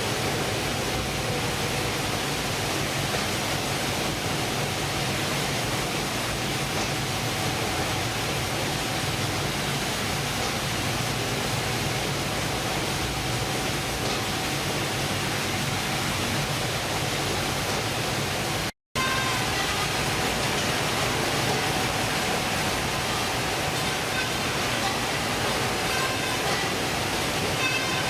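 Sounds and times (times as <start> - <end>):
boat engine drone: 7.2 - 28.0.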